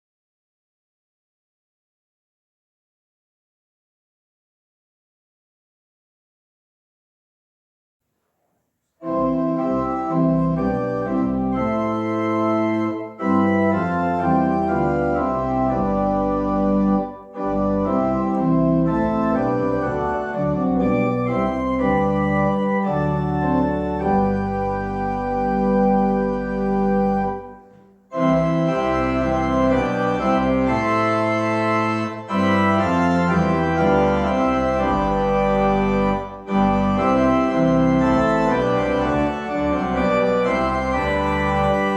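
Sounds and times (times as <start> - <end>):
church organ chords: 9.0 - 41.9.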